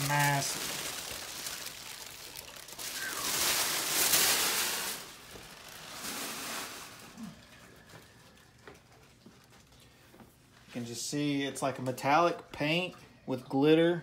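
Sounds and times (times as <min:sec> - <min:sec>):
packaging rustling and scraping: 0:00.0 - 0:07.2.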